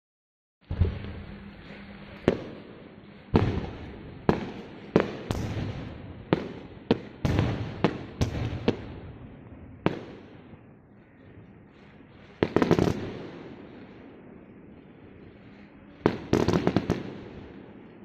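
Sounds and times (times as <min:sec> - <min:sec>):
rumbling haze: 0:00.6 - 0:18.0
fireworks bangs: 0:02.2 - 0:10.6, 0:12.4 - 0:13.9, 0:16.0 - 0:18.0.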